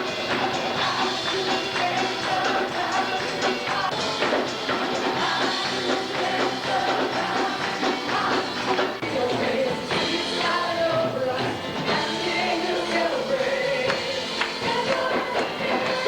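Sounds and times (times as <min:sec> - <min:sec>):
tambourine: 0:00.0 - 0:09.0
band playing upbeat song: 0:00.0 - 0:16.0.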